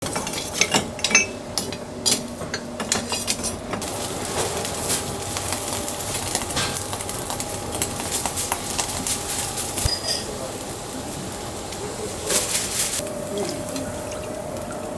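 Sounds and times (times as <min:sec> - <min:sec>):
utensils clinking against dishes: 0:00.0 - 0:14.8
steady hiss with crackles: 0:03.8 - 0:14.9.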